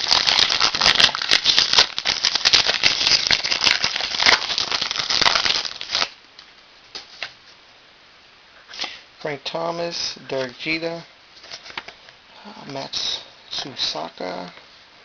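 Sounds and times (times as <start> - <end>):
card pack wrapper crinkling: 0.0 - 6.2, 11.4 - 12.0.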